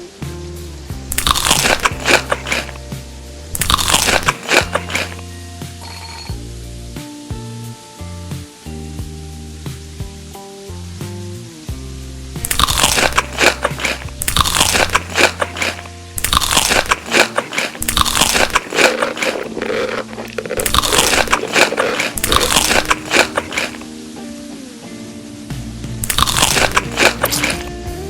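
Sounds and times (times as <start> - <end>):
person chewing crisp food: 1.1 - 2.8, 3.5 - 5.2, 12.4 - 23.9, 26.0 - 27.7
background music: 12.2 - 28.0.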